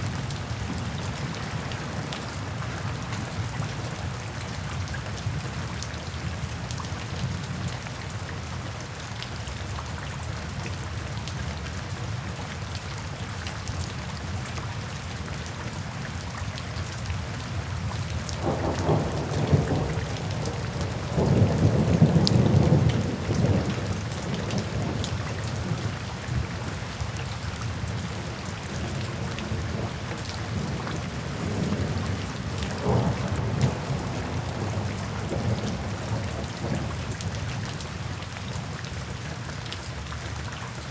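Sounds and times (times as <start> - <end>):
rain on a tin roof: 0.0 - 40.9
thunder rumbling: 18.4 - 25.9, 28.8 - 37.3.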